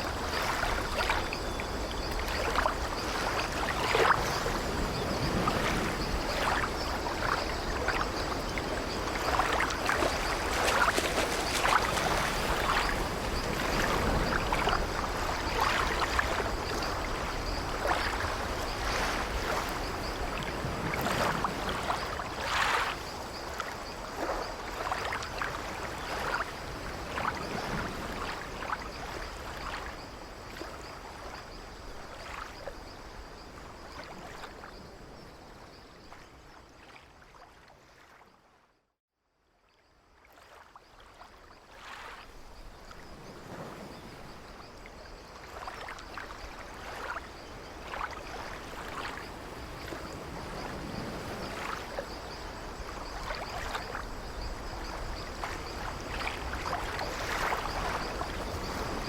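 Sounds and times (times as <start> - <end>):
sea waves washing against a ship: 0.0 - 30.0.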